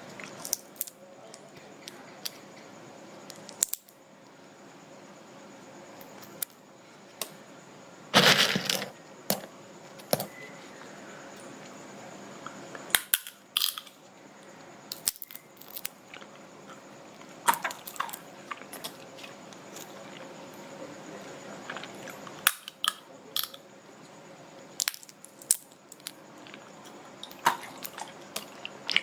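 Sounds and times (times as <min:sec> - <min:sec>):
seed shells cracking between teeth: 0:00.3 - 0:01.0, 0:03.3 - 0:04.0, 0:13.0 - 0:13.9, 0:14.9 - 0:16.3, 0:17.5 - 0:19.0, 0:21.8 - 0:23.6, 0:24.8 - 0:26.6, 0:27.2 - 0:29.0.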